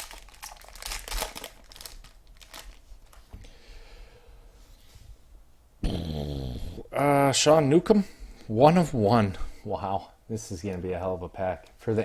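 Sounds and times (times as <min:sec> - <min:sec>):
wrapper crinkling and tearing: 0:00.0 - 0:03.2.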